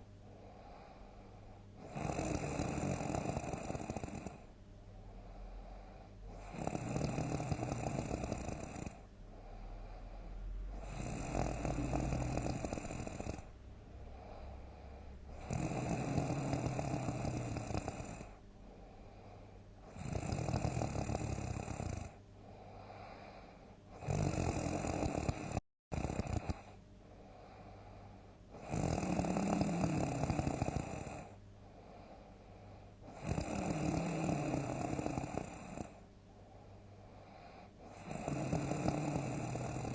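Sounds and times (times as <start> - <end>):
quiet breathing: 0.0 - 39.9
person snoring loudly: 1.8 - 4.5, 6.3 - 13.5, 14.1 - 18.4, 19.8 - 22.2, 23.9 - 26.8, 28.6 - 31.4, 33.1 - 36.0, 37.8 - 39.9.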